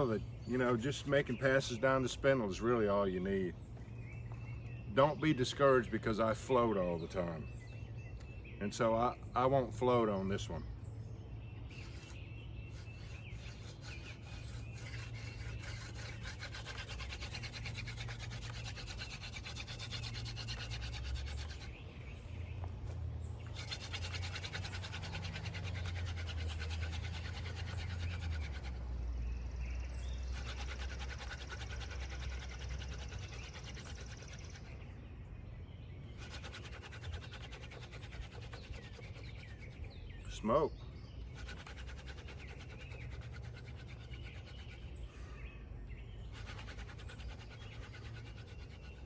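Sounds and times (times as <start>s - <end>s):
wooden spindle scraping fireboard: 11.7s - 21.8s, 23.4s - 28.8s, 36.2s - 39.9s.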